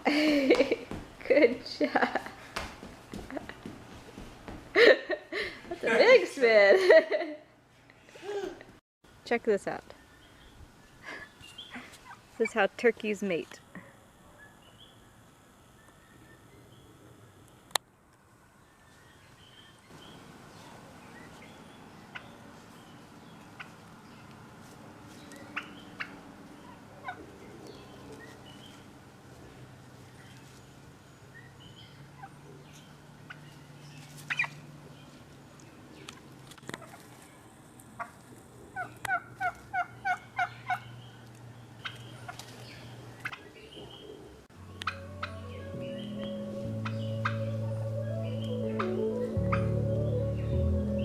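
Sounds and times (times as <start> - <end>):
turkeys calling and clicking: 22.1 - 24.3, 25.2 - 28.7, 32.2 - 34.6, 35.6 - 37.2, 37.8 - 50.5
turkey gobbling: 34.3 - 34.6, 38.8 - 40.9, 44.8 - 46.0, 46.8 - 49.8.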